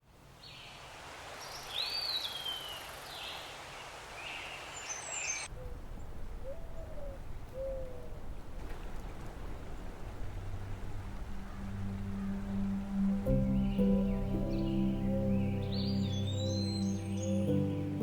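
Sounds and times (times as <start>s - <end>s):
low hooting calls: 9.6s - 18.0s
birds whistling calls: 11.5s - 18.0s.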